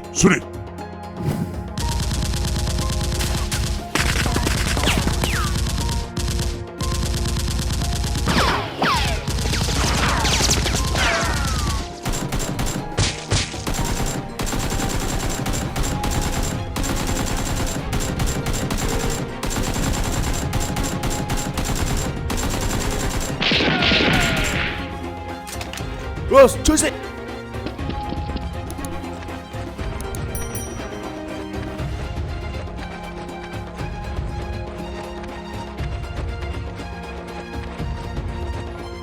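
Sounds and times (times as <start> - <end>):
rapid automatic gunfire: 1.8 - 24.8.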